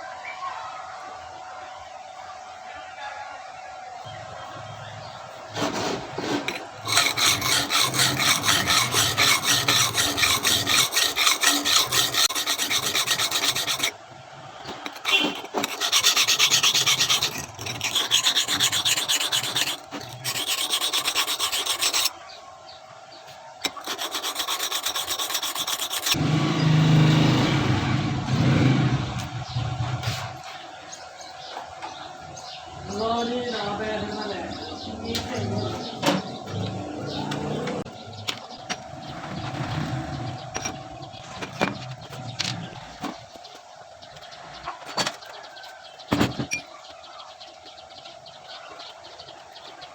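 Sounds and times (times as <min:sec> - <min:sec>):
file rasping back and forth: 0:05.6 - 0:14.0, 0:14.7 - 0:22.2, 0:23.6 - 0:26.2
low heavy rubbing: 0:06.3 - 0:13.9, 0:14.8 - 0:22.1.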